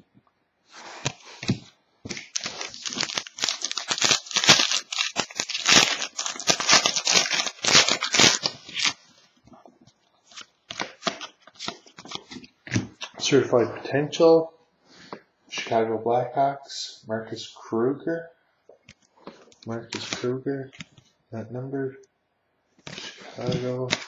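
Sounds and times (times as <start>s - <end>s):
foil wrapper tearing and crinkling: 2.1s - 9.0s, 10.3s - 12.4s.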